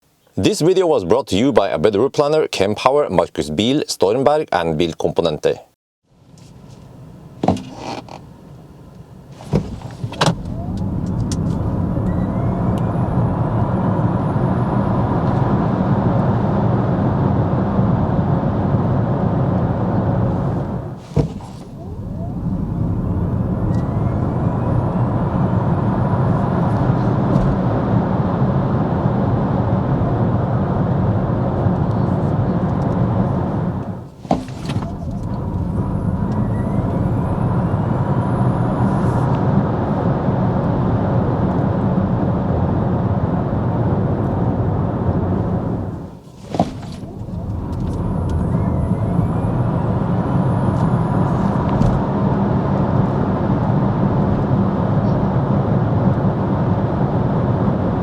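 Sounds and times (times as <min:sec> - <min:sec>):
tyre and wind noise: 0:09.3 - 0:13.8, 0:20.4 - 0:24.4, 0:34.1 - 0:37.0, 0:45.6 - 0:50.0.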